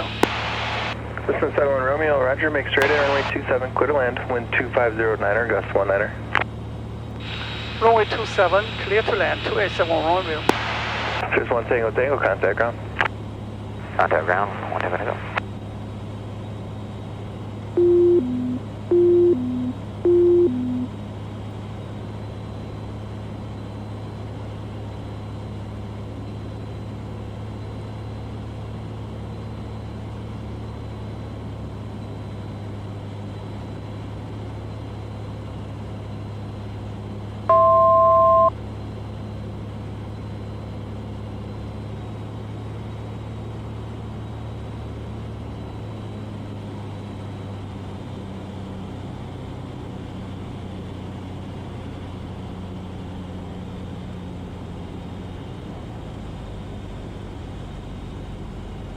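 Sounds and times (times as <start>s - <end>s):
aircraft engine droning: 0.0s - 58.9s
two-note electronic beeps: 17.8s - 20.9s, 37.5s - 38.5s
single electronic tone: 17.8s - 21.0s, 37.5s - 38.6s.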